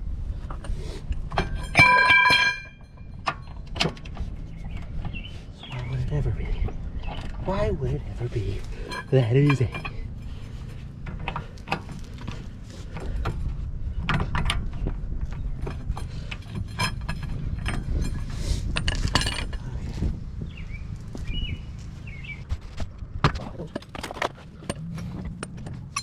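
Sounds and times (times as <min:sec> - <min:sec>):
metal tools knocking on axle: 0:01.3 - 0:05.2, 0:08.4 - 0:19.8.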